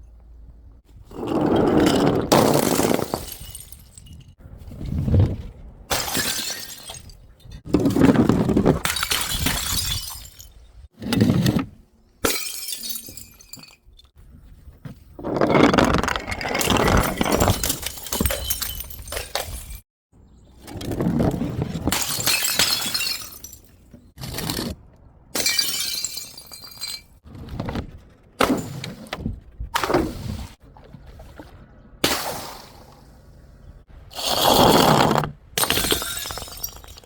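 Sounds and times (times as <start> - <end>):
glass bottles shattering: 1.6 - 4.4, 5.9 - 7.6, 8.4 - 10.6, 12.2 - 14.1, 16.2 - 19.8, 21.9 - 23.8, 25.4 - 27.2, 34.2 - 37.0.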